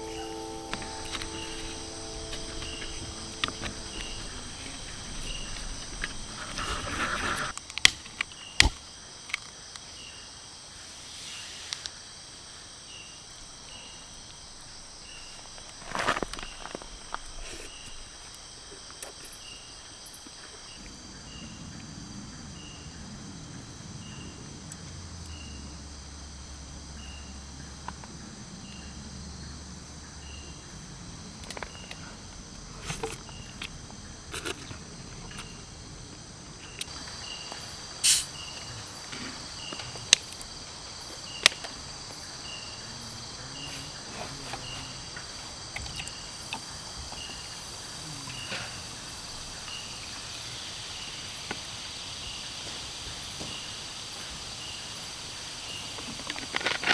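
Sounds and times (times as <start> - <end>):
repeating insect chirp: 0.0 - 7.5, 36.8 - 56.9
insects chirring: 0.0 - 56.9.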